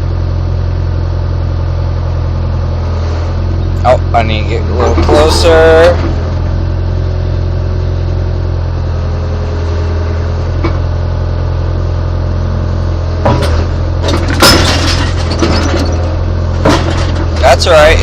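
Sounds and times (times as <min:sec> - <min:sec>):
excavator diesel engine running: 0:00.0 - 0:18.0
metal clunks: 0:10.6 - 0:10.9, 0:13.2 - 0:17.5.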